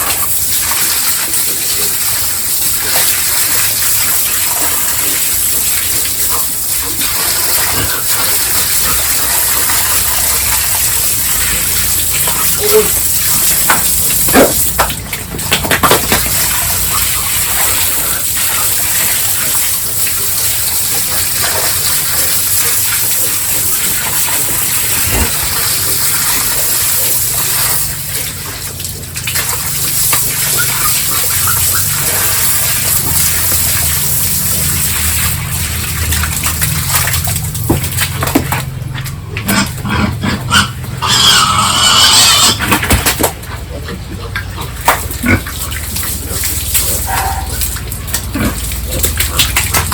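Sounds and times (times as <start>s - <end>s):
pigs grunting: 0.0s - 14.7s, 15.4s - 37.2s, 38.5s - 49.9s
running water: 0.0s - 39.4s, 42.6s - 49.9s
high pig squeal: 12.2s - 13.6s, 16.7s - 18.7s, 30.2s - 32.7s, 39.5s - 42.8s, 46.8s - 47.8s.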